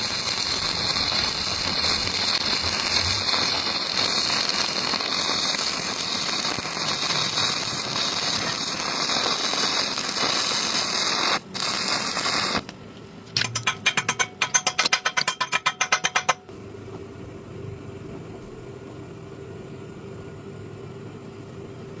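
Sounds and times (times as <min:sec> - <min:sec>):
welding arc crackling: 0:00.0 - 0:12.8.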